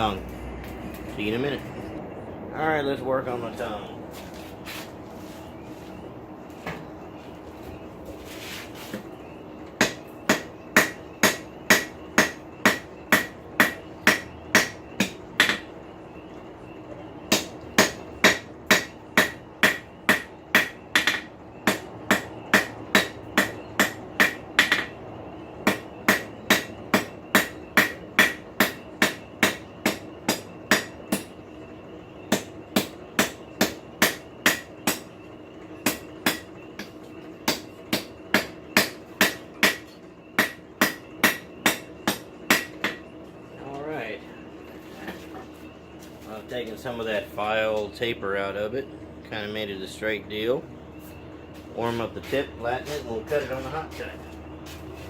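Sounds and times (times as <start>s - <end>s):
hammer striking steel on anvil: 9.8s - 15.7s, 17.3s - 24.9s, 25.6s - 31.3s, 32.3s - 35.1s, 35.8s - 43.0s.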